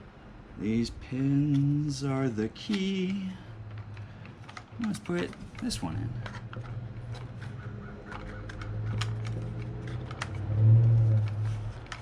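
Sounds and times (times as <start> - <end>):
wooden parts clicking and tapping: 2.6 - 12.0.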